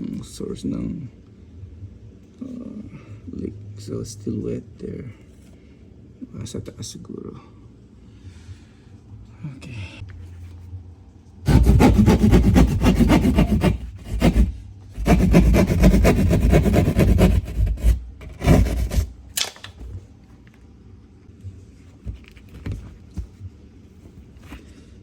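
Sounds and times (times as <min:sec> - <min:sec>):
rasping strokes on wood: 0:11.5 - 0:19.1.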